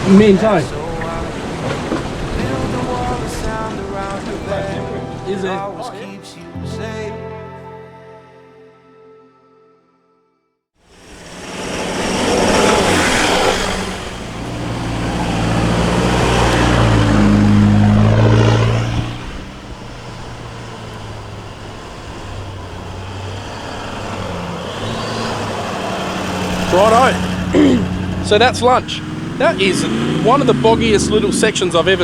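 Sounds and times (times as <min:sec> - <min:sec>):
vehicle engine working hard: 0:10.9 - 0:32.0.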